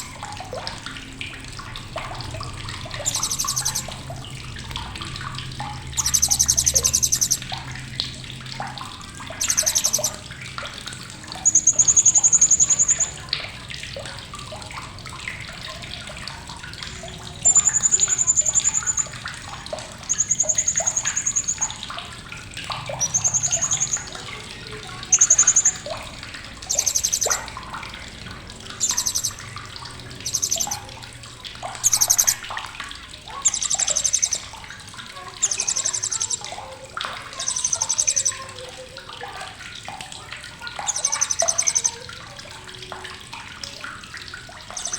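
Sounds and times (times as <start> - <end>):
parrot chattering calls: 3.0 - 3.9, 6.0 - 7.4, 9.4 - 10.2, 11.4 - 13.2, 20.1 - 21.6, 22.9 - 24.2, 25.0 - 27.6, 28.8 - 29.4, 30.2 - 30.9, 31.8 - 32.4, 33.4 - 34.5, 35.4 - 36.6, 37.3 - 38.4, 40.8 - 42.0.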